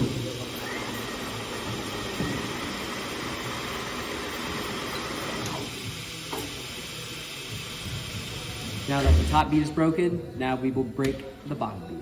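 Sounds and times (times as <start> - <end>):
tire machine whirring with hiss: 0.4 - 9.4.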